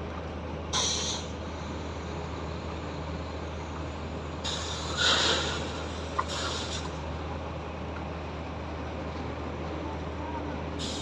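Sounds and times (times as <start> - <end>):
heavy machinery engine drone: 0.0 - 11.0
hiss bursts: 0.8 - 1.3, 4.4 - 7.0, 10.8 - 11.0.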